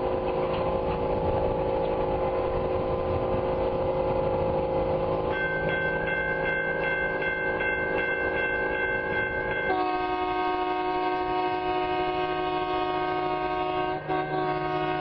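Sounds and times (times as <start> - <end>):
train horn blowing: 9.6 - 15.0.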